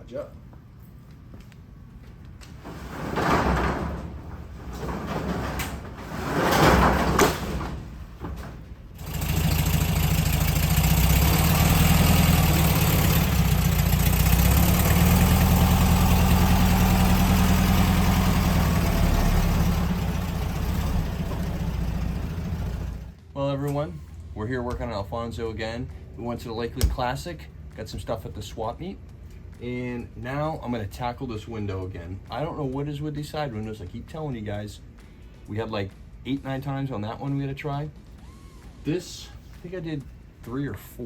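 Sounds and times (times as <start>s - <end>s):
engine starting and running: 2.6s - 23.2s, 38.0s - 39.6s.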